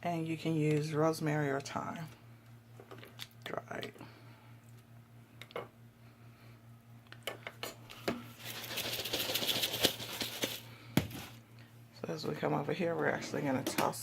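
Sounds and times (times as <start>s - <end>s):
spice container rattling: 8.4s - 11.4s.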